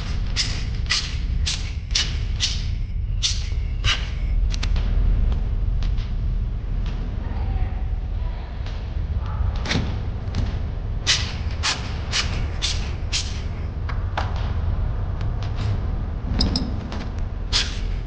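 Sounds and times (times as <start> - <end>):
low hum: 0.0 - 18.0.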